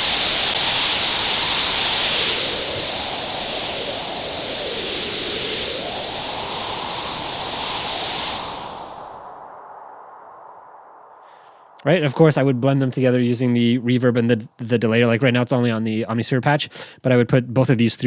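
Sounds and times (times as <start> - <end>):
synthesized wind hiss: 0.0 - 12.5
low gusting wind band: 0.0 - 13.9.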